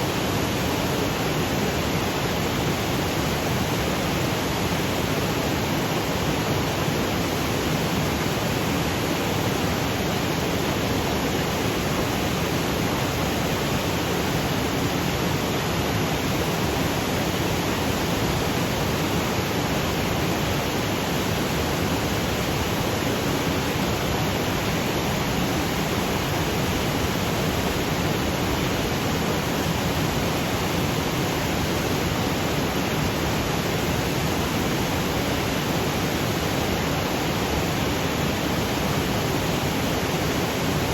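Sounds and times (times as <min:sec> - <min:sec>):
waterfall rushing over rocks: 0:00.0 - 0:40.9.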